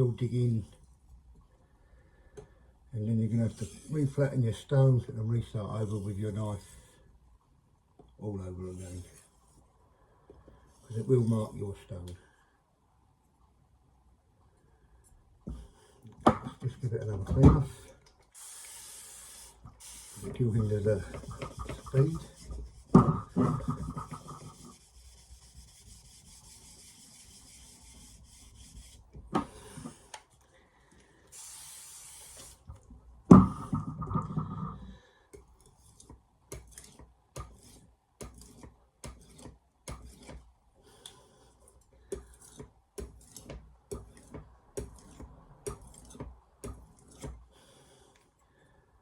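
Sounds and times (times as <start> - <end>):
steady hiss: 17.7 - 23.5, 31.1 - 32.8
spray bursts: 18.4 - 20.4, 31.3 - 32.7
rubbing on sharpening plate: 18.9 - 30.0.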